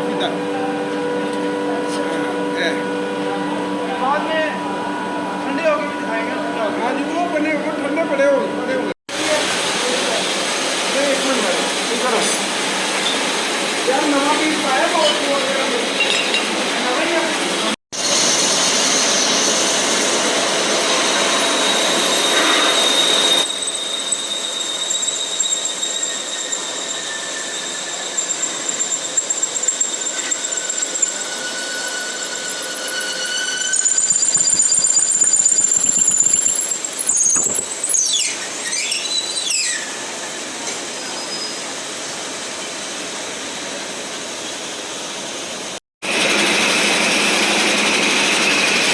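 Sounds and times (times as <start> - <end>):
metal machining squeal: 20.8 - 41.8
rough grinding noise: 21.0 - 39.9.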